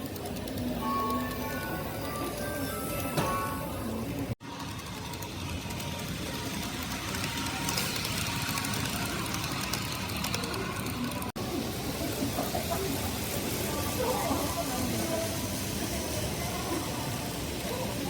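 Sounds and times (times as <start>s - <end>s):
model train whirring: 0.0s - 3.0s, 4.0s - 18.0s.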